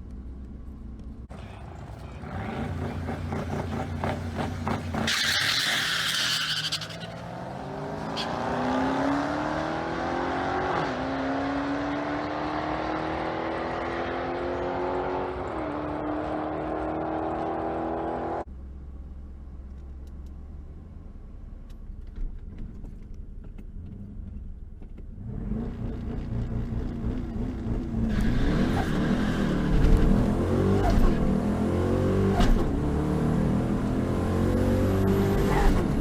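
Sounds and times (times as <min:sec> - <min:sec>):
engine accelerating at full throttle: 0:01.3 - 0:05.8, 0:07.2 - 0:18.5, 0:25.1 - 0:36.0.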